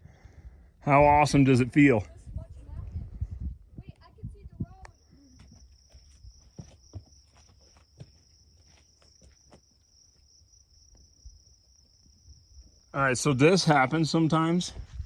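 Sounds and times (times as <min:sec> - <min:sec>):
wind rumble on microphone: 0:00.0 - 0:05.6, 0:14.7 - 0:15.0
high-pitched insect trill: 0:04.4 - 0:14.6.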